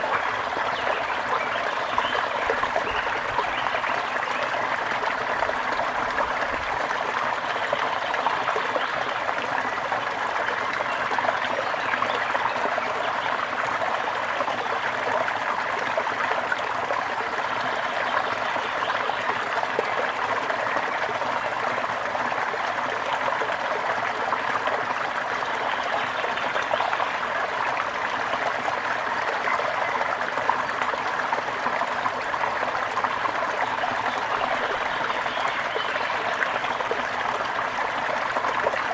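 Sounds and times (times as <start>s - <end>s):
brook babbling over stones: 0.0s - 38.9s.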